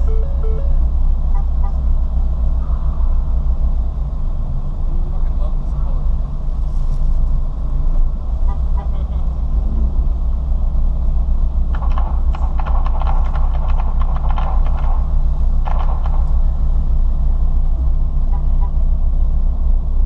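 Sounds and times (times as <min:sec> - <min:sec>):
car engine droning at speed: 0:00.0 - 0:20.0
rough crackling noise: 0:11.6 - 0:17.1.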